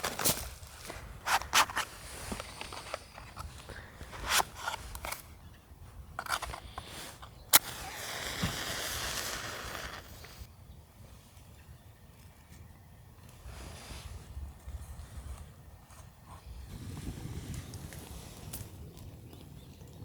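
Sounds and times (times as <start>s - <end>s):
even hiss: 6.7s - 10.5s.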